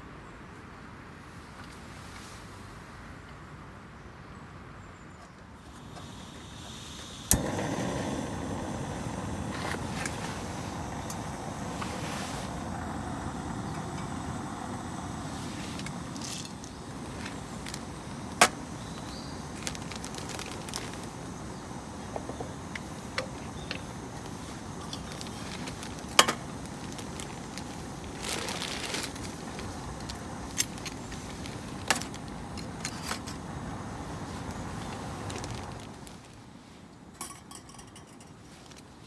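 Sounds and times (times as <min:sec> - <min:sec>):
rain hissing: 0:05.6 - 0:36.6
sharp clicks and clinks: 0:37.2 - 0:38.4.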